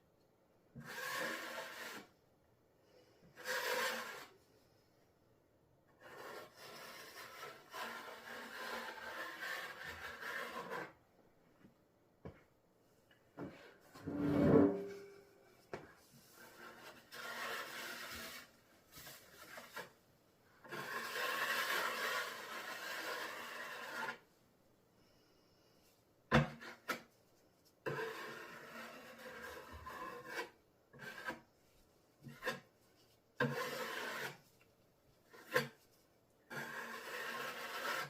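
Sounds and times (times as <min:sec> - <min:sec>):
blade scraping cement slurry: 0:00.8 - 0:02.1, 0:03.4 - 0:04.3, 0:06.0 - 0:11.0, 0:16.3 - 0:19.9, 0:20.6 - 0:24.3, 0:27.8 - 0:31.5, 0:32.2 - 0:32.7, 0:33.4 - 0:34.5, 0:35.3 - 0:35.8, 0:36.5 - 0:38.0.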